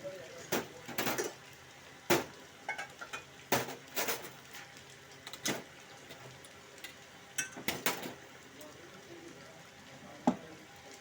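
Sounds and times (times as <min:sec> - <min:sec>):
metal utensils and pots clinking: 0:00.3 - 0:01.4, 0:02.1 - 0:08.2.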